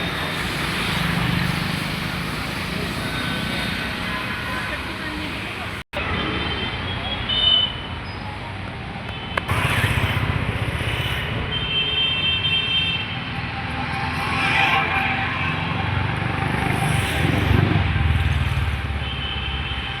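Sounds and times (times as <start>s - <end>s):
street traffic noise: 0.0s - 20.0s
motor vehicle running: 13.3s - 19.1s.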